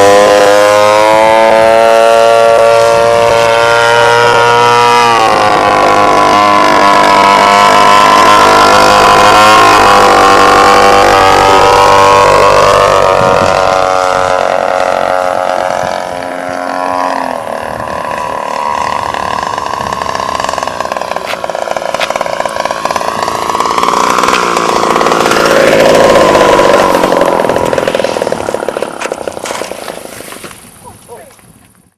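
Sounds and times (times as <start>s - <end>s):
model plane motor droning: 0.0s - 31.1s.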